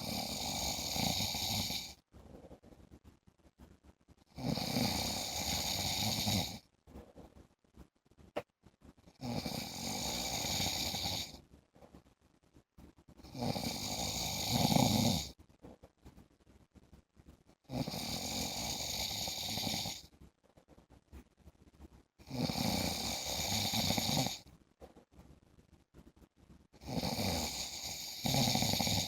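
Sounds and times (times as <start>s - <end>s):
man snoring: 0.0s - 1.9s, 4.4s - 6.6s, 9.2s - 11.4s, 13.2s - 15.3s, 17.7s - 20.0s, 22.2s - 24.4s, 26.8s - 29.0s
quiet breaths: 0.0s - 29.0s.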